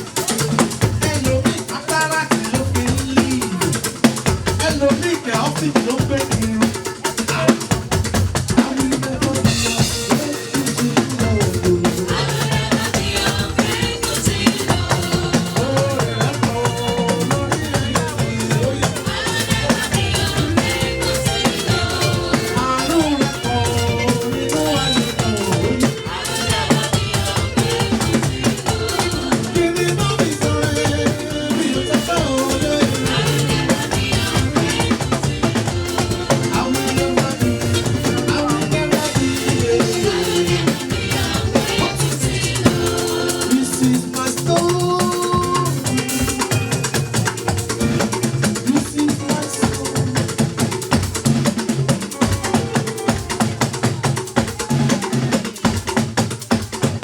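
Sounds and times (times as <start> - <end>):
drums beating: 0.0 - 57.0
shaker: 0.0 - 57.0
choir singing a hymn: 8.6 - 55.8.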